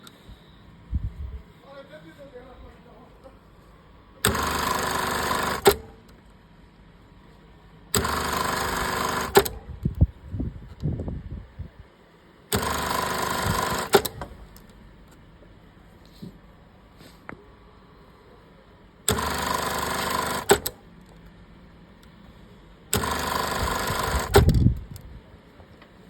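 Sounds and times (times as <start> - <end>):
sewing machine running: 4.2 - 5.9, 8.0 - 9.6, 12.5 - 14.3, 19.1 - 20.8, 22.9 - 24.6.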